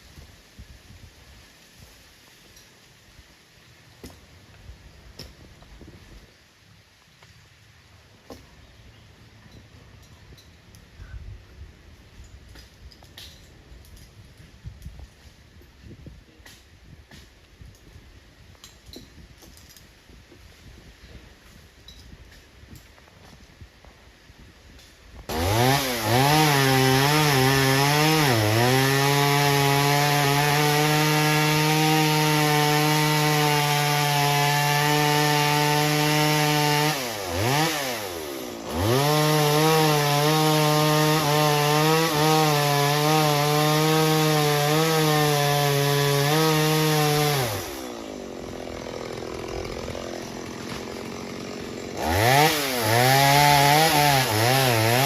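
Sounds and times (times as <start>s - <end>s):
chainsaw cutting tree trunk: 25.2s - 55.0s.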